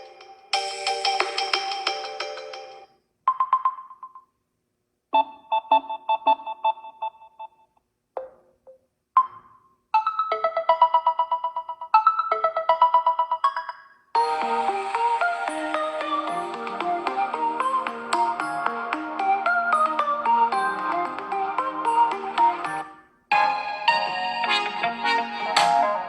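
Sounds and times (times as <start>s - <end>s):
phone ringtone melody: 9.2s - 26.0s.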